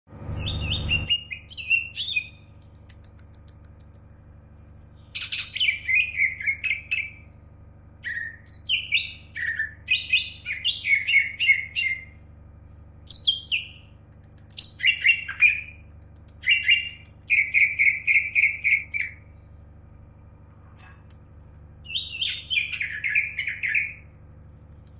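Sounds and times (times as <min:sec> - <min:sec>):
bird singing whistled phrases: 0:00.3 - 0:02.4, 0:08.0 - 0:12.1, 0:13.1 - 0:13.9, 0:14.6 - 0:15.8, 0:16.4 - 0:19.2, 0:21.9 - 0:24.0.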